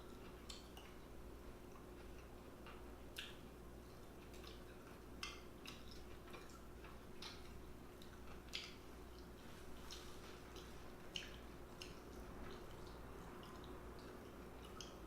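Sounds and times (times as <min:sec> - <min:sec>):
faint steady hum: 0:00.0 - 0:15.0
mouth clicks and chewing smacks: 0:00.1 - 0:01.0, 0:01.6 - 0:15.0.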